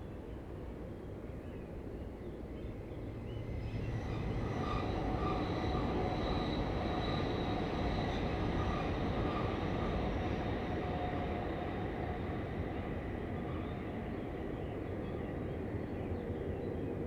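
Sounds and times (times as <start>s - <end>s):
train rumbling past: 2.8s - 15.7s.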